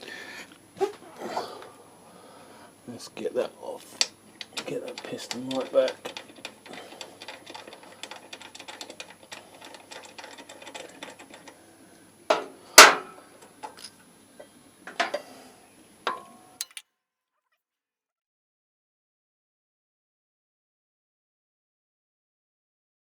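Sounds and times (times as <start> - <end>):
metal tools clicking on brake caliper: 16.6 - 16.8.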